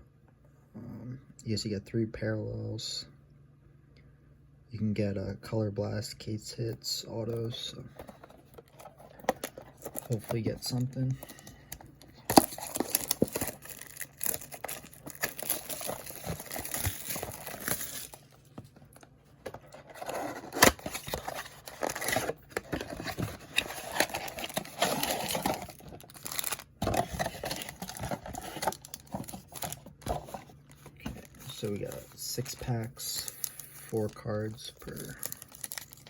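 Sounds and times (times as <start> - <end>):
packaging crinkling and tearing: 8.0 - 19.0, 19.7 - 32.5, 33.2 - 36.0.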